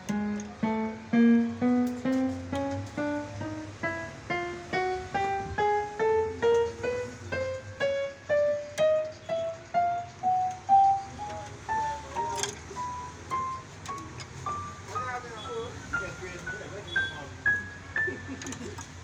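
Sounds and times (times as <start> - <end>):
electronic keyboard notes: 0.0 - 19.0.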